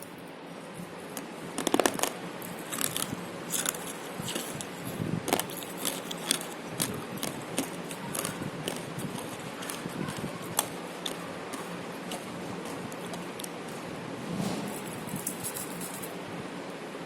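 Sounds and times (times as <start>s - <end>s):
crunchy biting and chewing: 1.6s - 14.0s.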